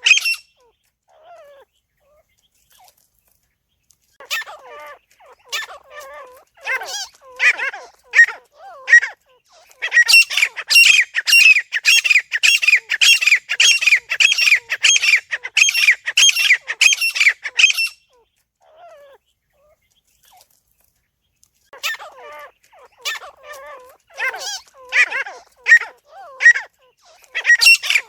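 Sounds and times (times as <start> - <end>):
francolin calling shrill notes: 9.8 - 18.0, 27.4 - 28.0.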